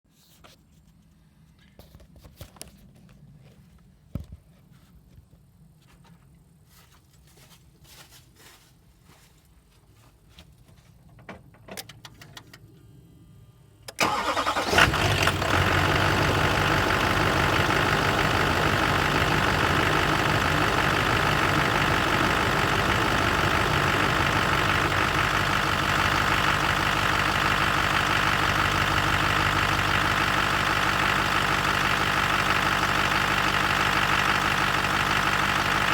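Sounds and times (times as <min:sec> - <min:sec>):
diesel engine starting and idling: 0:13.9 - 0:35.9.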